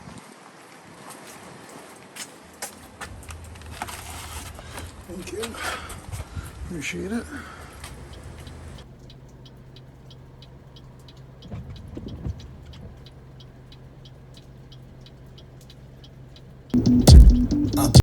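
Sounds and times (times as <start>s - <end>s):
car engine idling: 2.9s - 18.0s
even ticking: 3.1s - 18.0s
loud music: 16.8s - 18.0s.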